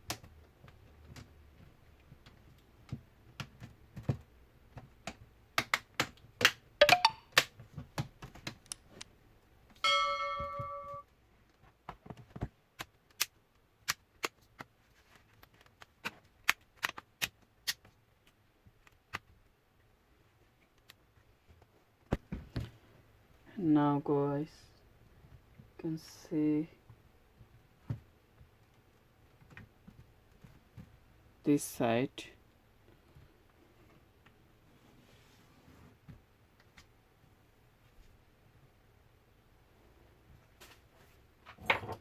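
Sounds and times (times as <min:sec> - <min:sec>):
plastic clicks and snaps: 0:12.8 - 0:14.7, 0:15.4 - 0:19.3.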